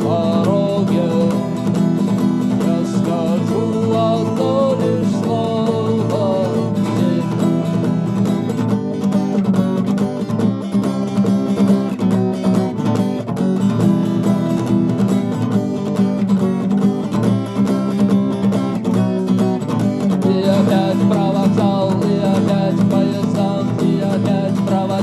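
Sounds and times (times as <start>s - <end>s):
acoustic guitar strumming: 0.0s - 25.0s.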